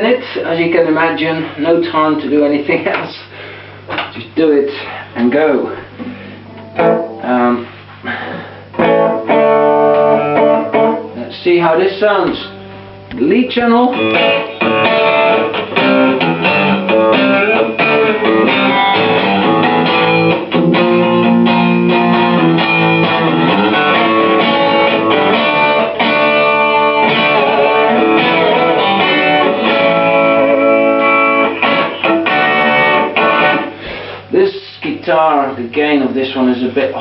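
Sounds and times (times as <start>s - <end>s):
distorted electric guitar: 5.0s - 34.3s.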